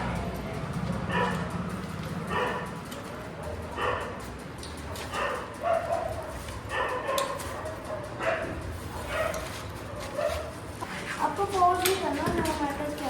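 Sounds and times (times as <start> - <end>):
dog yipping: 5.0 - 10.5.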